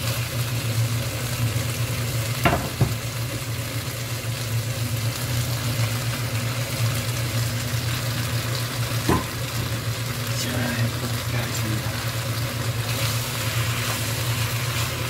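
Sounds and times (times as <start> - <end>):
food sizzling in a wok: 0.0 - 15.0
utensil knocking against wok: 2.4 - 3.0.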